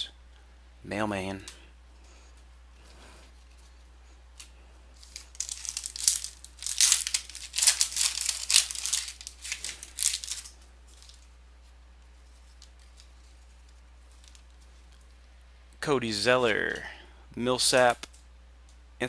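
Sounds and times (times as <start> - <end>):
card pack wrapper tearing: 5.0 - 11.2.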